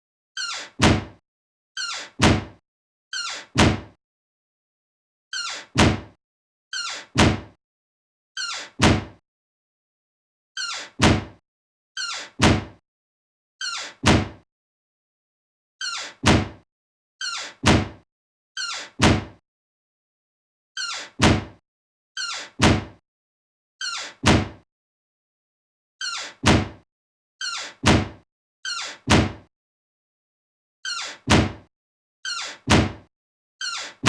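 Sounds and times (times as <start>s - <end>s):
door closing impact: 0.8s - 1.1s, 2.2s - 2.5s, 3.6s - 3.9s, 5.8s - 6.1s, 7.2s - 7.5s, 8.8s - 9.2s, 11.0s - 11.3s, 12.4s - 12.7s, 14.0s - 14.4s, 16.2s - 16.6s, 17.6s - 18.0s, 19.0s - 19.3s, 21.2s - 21.5s, 22.6s - 22.9s, 24.2s - 24.5s, 26.4s - 26.7s, 27.8s - 28.1s, 29.1s - 29.4s, 31.3s - 31.6s, 32.7s - 33.0s.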